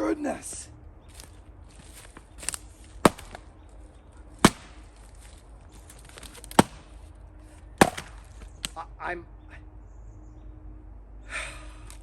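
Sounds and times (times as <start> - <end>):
axe splitting firewood: 1.2 - 3.7, 4.3 - 7.1, 7.7 - 8.8.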